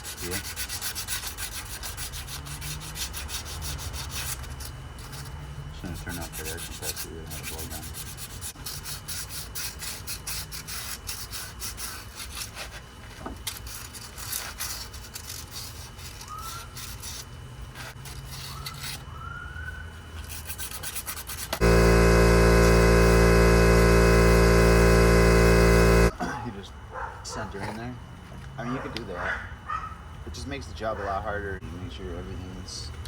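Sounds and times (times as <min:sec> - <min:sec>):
air compressor running: 0:21.6 - 0:26.1.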